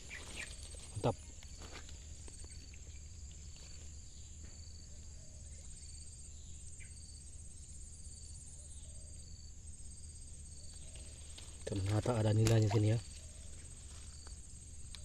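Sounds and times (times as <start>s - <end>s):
crickets trilling: 0.0s - 15.0s
insect chirping in short pulses: 8.1s - 15.0s.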